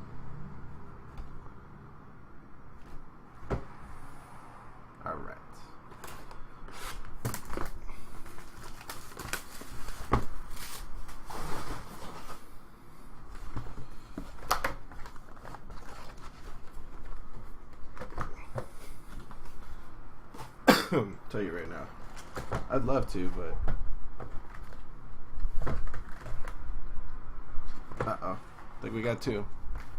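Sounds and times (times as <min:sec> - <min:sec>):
pack wrappers rustling: 0:06.0 - 0:12.3.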